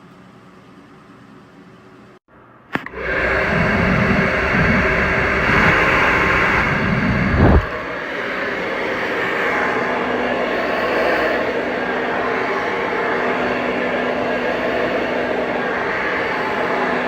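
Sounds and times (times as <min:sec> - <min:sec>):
hair dryer air rush: 0:02.7 - 0:17.0
gusty low airflow rumble: 0:03.0 - 0:08.0.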